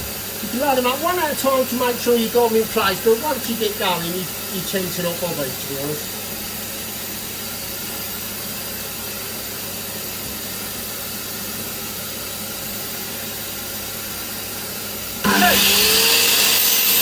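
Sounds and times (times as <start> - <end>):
steady hiss: 0.0 - 7.0.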